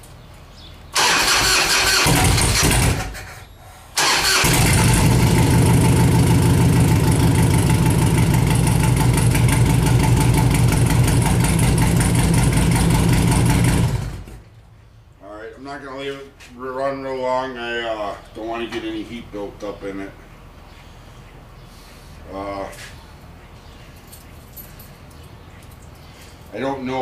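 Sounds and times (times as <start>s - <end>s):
electric starter cranking: 1.0s - 3.4s, 4.0s - 7.0s
motorcycle engine idling: 4.5s - 14.3s.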